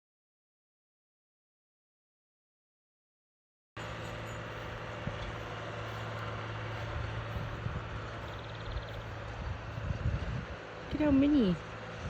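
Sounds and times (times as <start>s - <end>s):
low mechanical hum: 3.8s - 12.0s.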